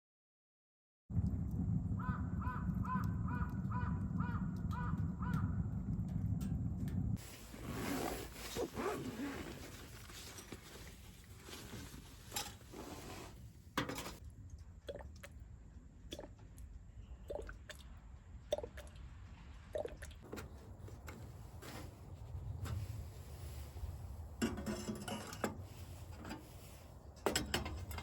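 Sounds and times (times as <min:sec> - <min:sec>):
steady low rumble: 0:01.1 - 0:12.7
crow cawing: 0:02.0 - 0:05.6.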